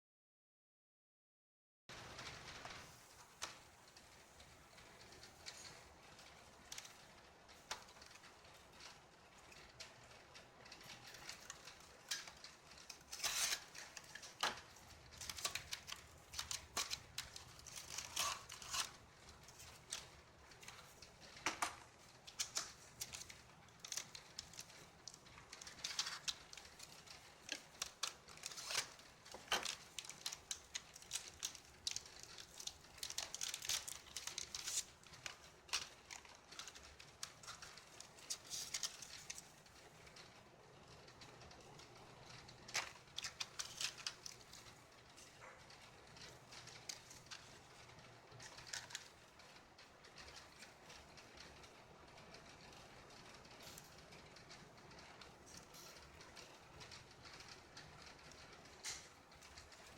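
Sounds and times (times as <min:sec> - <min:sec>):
packaging crinkling and rustling: 0:05.0 - 0:40.3, 0:40.9 - 0:51.5.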